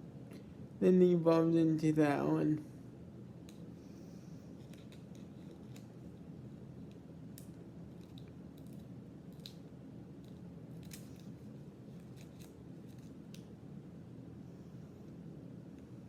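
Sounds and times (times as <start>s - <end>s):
steady low hum: 0.0s - 16.0s
trading cards snapping and rustling: 7.4s - 13.5s.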